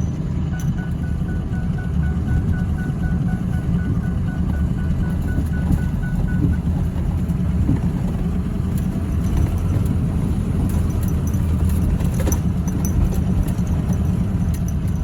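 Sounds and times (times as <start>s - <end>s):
pickup truck engine and road rumble: 0.0s - 15.0s
light rattles and clicks: 5.1s - 15.0s.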